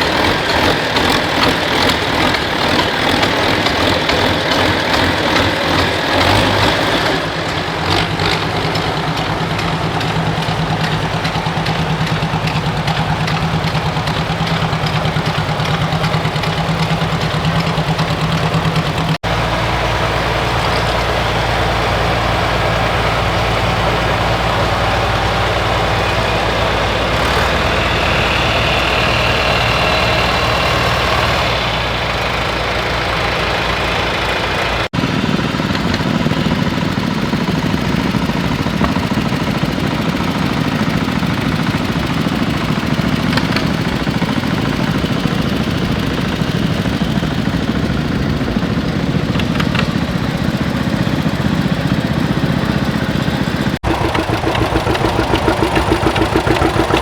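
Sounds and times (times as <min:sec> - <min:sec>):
engines running steadily: 0:00.0 - 0:57.0
rhythmic engine pulse: 0:00.0 - 0:57.0.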